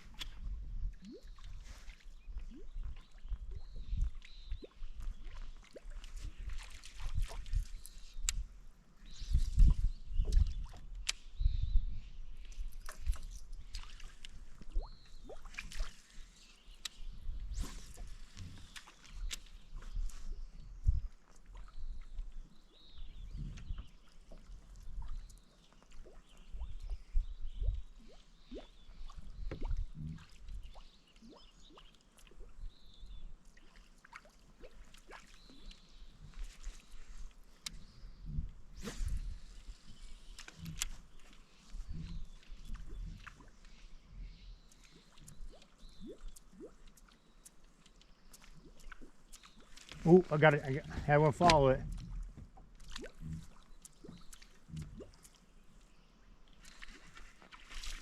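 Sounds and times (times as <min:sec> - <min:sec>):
water sloshing and splashing: 0:00.0 - 0:11.2, 0:12.4 - 0:58.0
water dripping and plinking: 0:44.7 - 0:55.4.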